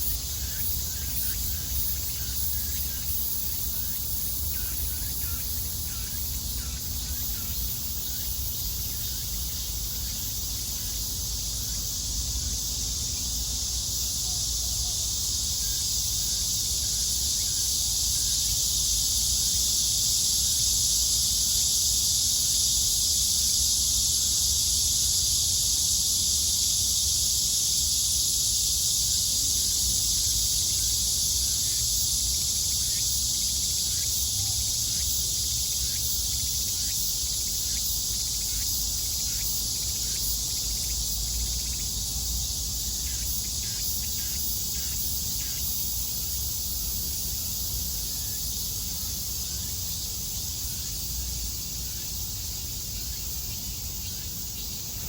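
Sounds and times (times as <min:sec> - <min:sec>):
cicadas buzzing: 0:00.0 - 0:55.0.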